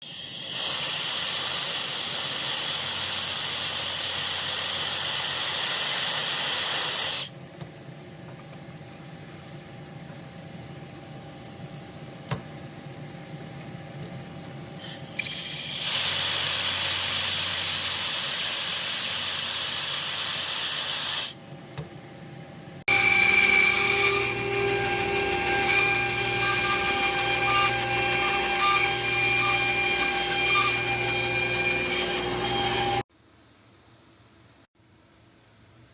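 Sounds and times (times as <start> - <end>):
machine humming with steady tones: 21.3 - 33.1.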